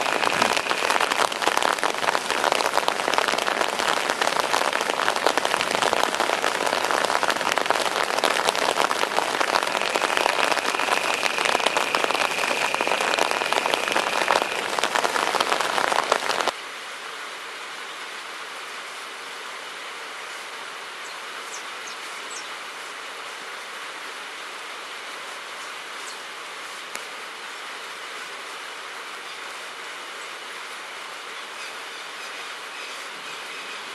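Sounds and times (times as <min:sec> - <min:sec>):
water pouring down rocks: 0:00.0 - 0:16.6.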